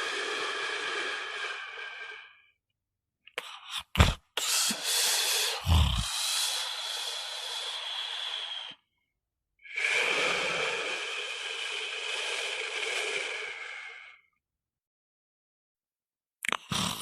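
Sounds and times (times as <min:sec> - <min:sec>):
snoring with whistling breath: 0:05.6 - 0:08.8, 0:09.7 - 0:14.4, 0:16.7 - 0:17.0.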